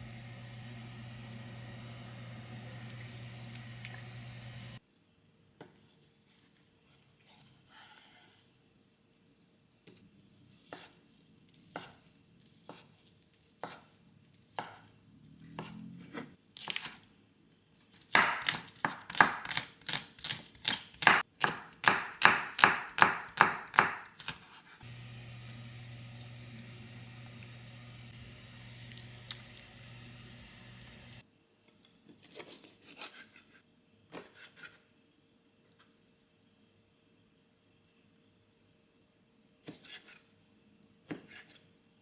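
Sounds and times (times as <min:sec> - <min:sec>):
knife chopping on cutting board: 0:18.1 - 0:24.6
steady low hum: 0:24.8 - 0:31.2.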